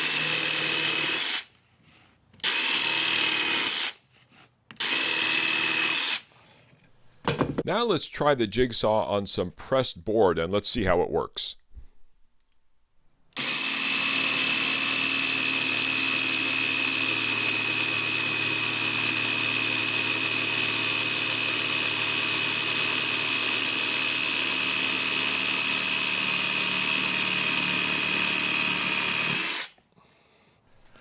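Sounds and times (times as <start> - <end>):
jigsaw cutting board: 0.0 - 6.3, 13.4 - 29.8.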